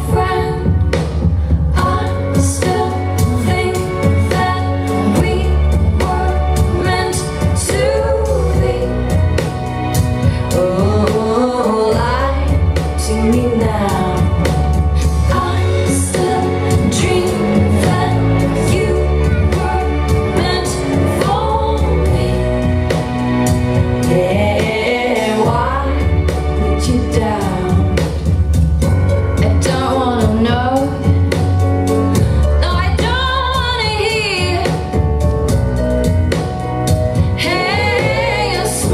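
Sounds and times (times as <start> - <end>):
woman singing: 0.0 - 28.4, 29.4 - 35.1, 37.2 - 38.9
pop dance music: 37.3 - 38.9.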